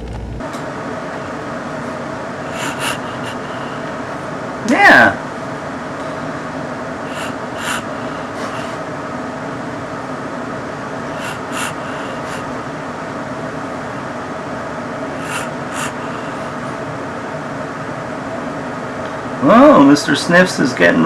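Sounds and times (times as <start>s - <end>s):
fan mechanical hum: 0.0s - 21.0s
faint puffs of hiss: 7.1s - 8.9s, 15.2s - 16.7s.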